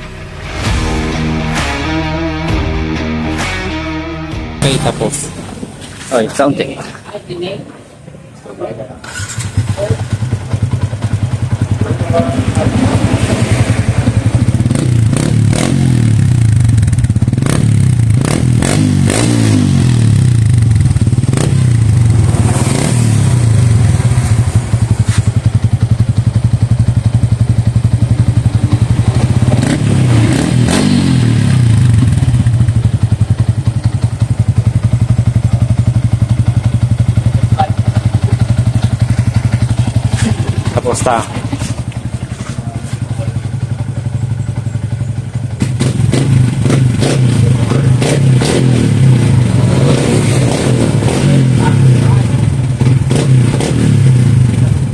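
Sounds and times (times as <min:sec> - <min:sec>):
motorcycle engine revving: 0:00.0 - 0:06.8, 0:08.6 - 0:54.9
exhaust pops: 0:45.6 - 0:48.3.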